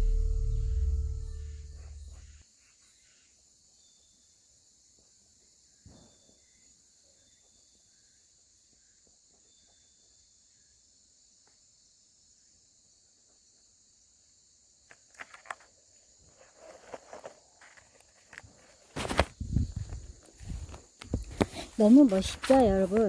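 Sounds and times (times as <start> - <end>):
footsteps through undergrowth: 16.4 - 23.0.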